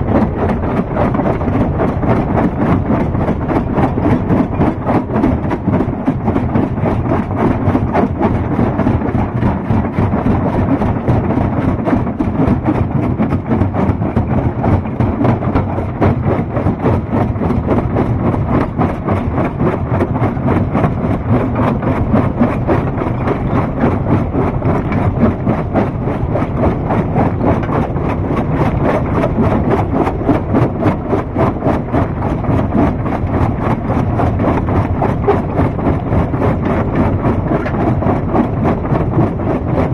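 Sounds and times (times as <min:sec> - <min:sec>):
rapid rattle: 0:00.0 - 0:39.9.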